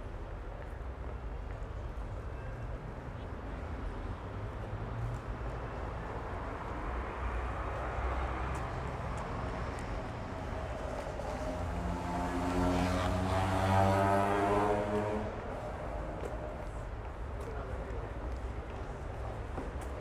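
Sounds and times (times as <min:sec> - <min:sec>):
street traffic noise: 0:00.0 - 0:20.0
vehicle engine drone approaching: 0:08.7 - 0:16.9.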